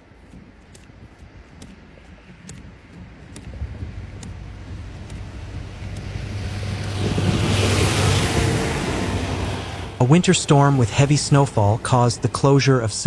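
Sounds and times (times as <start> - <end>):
tyre and road noise: 0.0 - 13.0
vehicle engine hum: 0.0 - 13.0.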